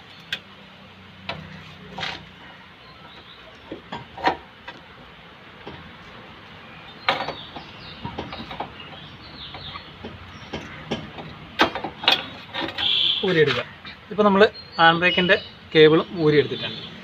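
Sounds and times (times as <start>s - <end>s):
metal clicks and knocks: 3.6s - 4.9s, 7.0s - 13.0s.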